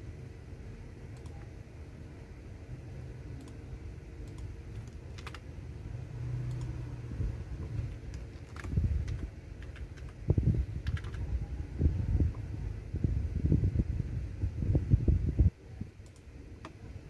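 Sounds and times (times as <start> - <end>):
keyboard key clicks: 4.2 - 5.4, 7.8 - 10.2, 10.8 - 11.2
low thuds of keystrokes: 4.2 - 5.4, 6.4 - 11.4.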